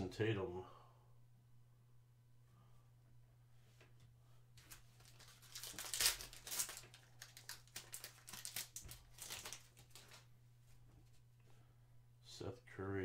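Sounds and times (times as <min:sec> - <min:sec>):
card pack wrapper crinkling and tearing: 0:04.6 - 0:10.2.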